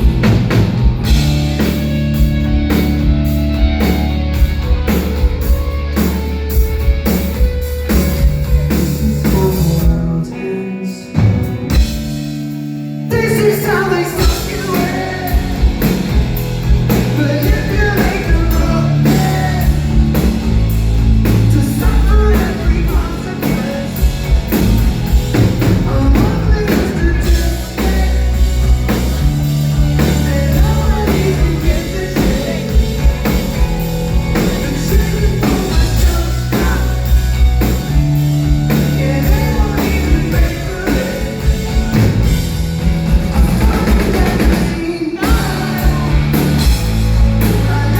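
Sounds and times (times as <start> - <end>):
drum kit: 0.0 - 10.4, 11.0 - 47.9
bass guitar: 0.0 - 47.9
guitars: 0.0 - 47.9
person singing: 13.1 - 16.0, 16.9 - 20.3, 21.3 - 24.4, 25.6 - 33.4, 34.3 - 37.6, 38.7 - 42.0, 43.4 - 47.9.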